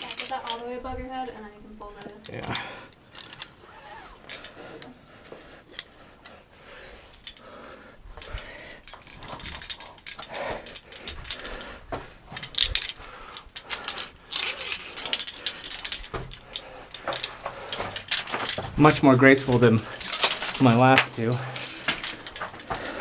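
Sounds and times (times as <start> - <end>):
metal climbing gear clicking: 0.0 - 0.7, 1.9 - 23.0
rope and clothing scraping: 3.1 - 6.0.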